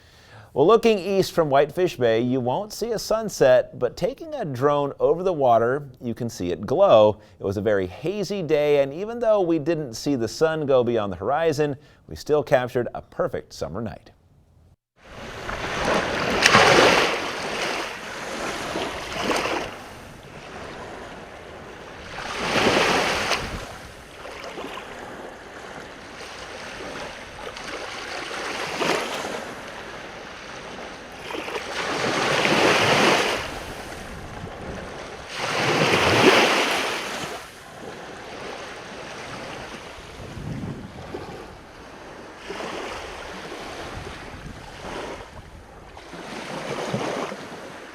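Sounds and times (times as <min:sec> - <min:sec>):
lake waves breaking on shore: 0:15.0 - 0:47.9.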